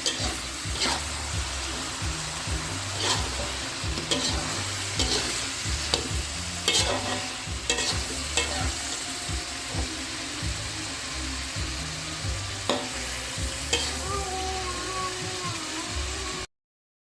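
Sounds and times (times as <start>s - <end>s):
spatula scraping and knocking pan: 0.0s - 1.1s, 3.0s - 8.8s
chicken sizzling in a pan: 0.0s - 16.5s.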